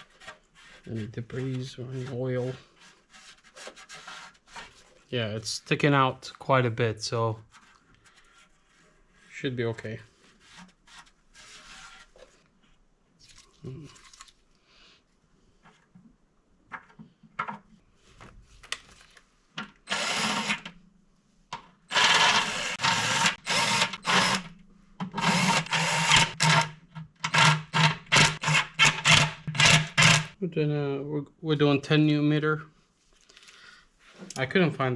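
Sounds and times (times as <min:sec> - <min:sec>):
power drill bursts: 0:19.9 - 0:20.7, 0:21.9 - 0:24.5, 0:25.2 - 0:26.7, 0:27.3 - 0:30.3.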